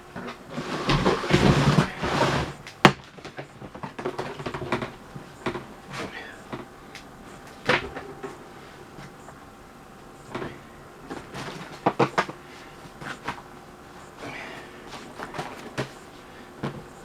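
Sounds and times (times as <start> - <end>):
rustling: 0.0 - 9.4, 10.0 - 17.0.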